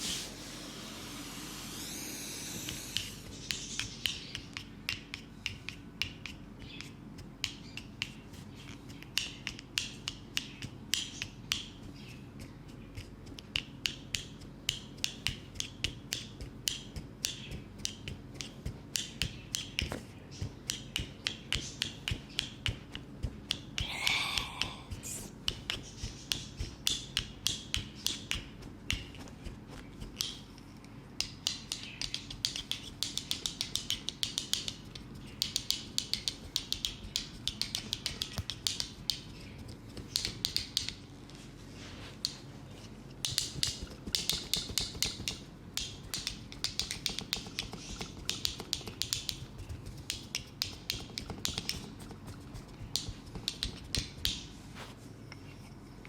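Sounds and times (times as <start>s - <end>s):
soft rubbing hiss: 0.0s - 3.9s, 41.0s - 43.1s, 54.4s - 55.8s
hands snapping and slapping: 8.9s - 11.8s, 13.0s - 30.5s, 31.2s - 41.0s, 43.2s - 54.5s.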